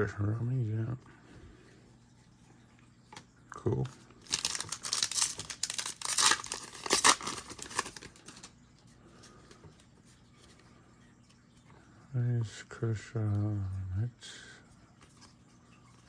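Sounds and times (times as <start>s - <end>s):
plastic wrapper tearing and crinkling: 3.9s - 8.6s.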